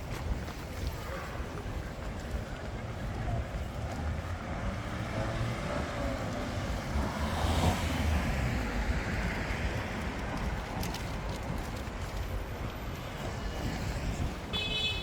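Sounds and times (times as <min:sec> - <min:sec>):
low rumble of traffic: 0:00.0 - 0:15.0
car passing close: 0:04.7 - 0:09.7.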